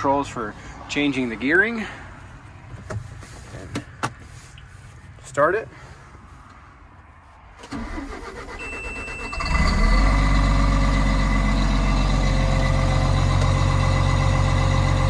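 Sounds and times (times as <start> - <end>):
diesel engine cranking and idling: 7.6 - 15.0.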